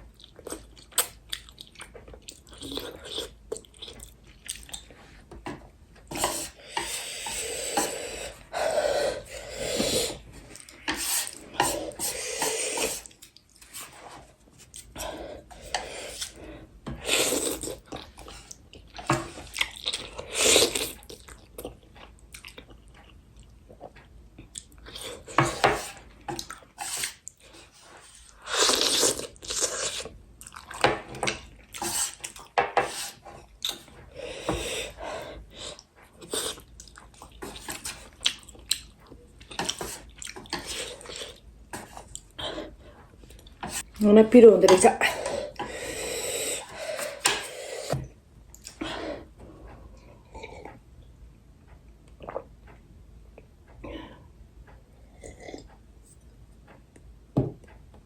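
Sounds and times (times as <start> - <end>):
person chewing noodles: 0.0 - 5.3, 6.1 - 44.0, 45.2 - 50.9, 51.7 - 57.1.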